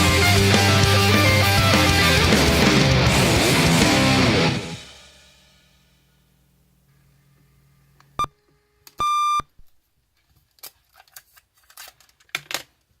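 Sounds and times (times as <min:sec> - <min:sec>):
electronic beeps: 0:09.0 - 0:09.4
small clicks and knocks: 0:10.2 - 0:12.9.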